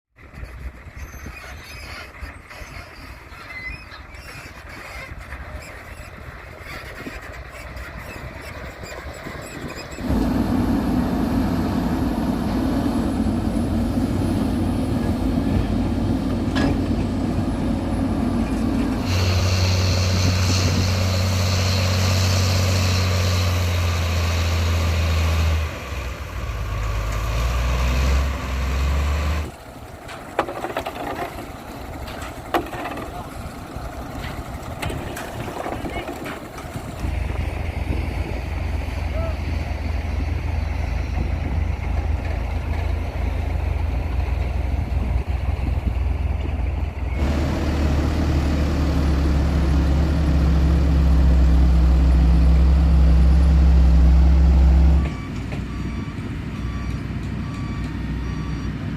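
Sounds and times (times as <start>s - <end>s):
construction machinery diesel engines: 0.2s - 58.9s
low engine hum: 5.0s - 58.9s.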